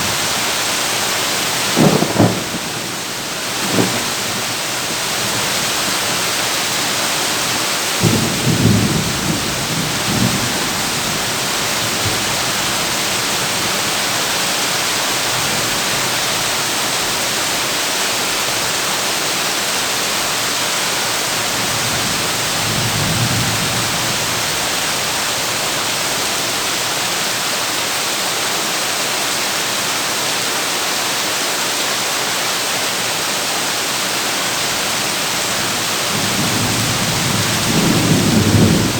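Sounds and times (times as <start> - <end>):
heavy rain on a tin roof: 0.0 - 38.9
deep thunder rumbling: 1.6 - 6.3, 8.0 - 13.6, 35.4 - 38.9.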